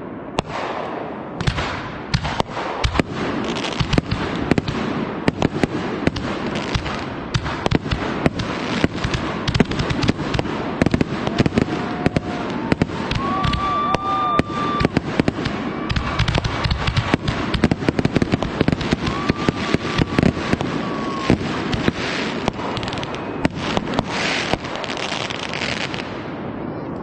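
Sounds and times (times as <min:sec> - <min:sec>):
fireworks bangs and crackles: 0:00.0 - 0:27.0
high firework whistle: 0:09.5 - 0:27.0.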